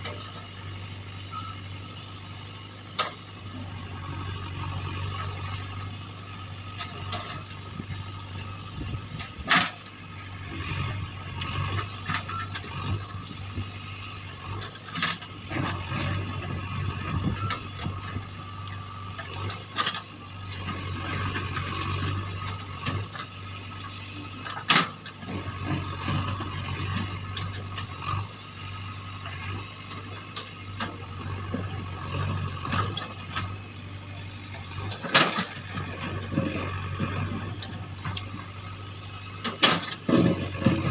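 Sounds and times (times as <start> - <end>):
diesel engine running: 0.0 - 40.9
metallic clanks and rattles: 24.4 - 27.9, 34.8 - 38.5, 39.4 - 40.9.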